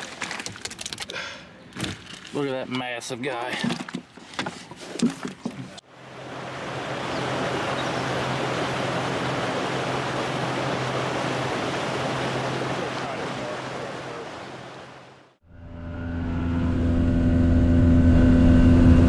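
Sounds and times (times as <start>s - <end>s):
boat motor hum: 3.8s - 19.0s
rush of wind and water: 4.9s - 15.4s.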